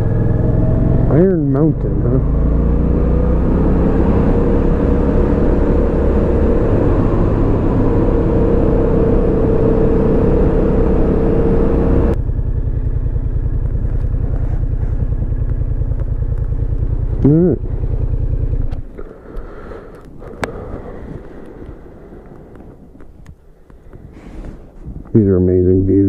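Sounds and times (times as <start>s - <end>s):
motorcycle engine running: 0.0s - 24.2s
wind noise: 20.1s - 25.3s.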